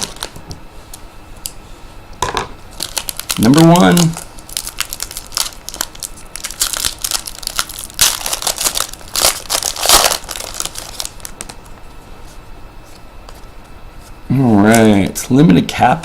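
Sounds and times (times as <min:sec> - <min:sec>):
wrapper tearing and crinkling: 0:00.0 - 0:00.4, 0:02.7 - 0:11.6.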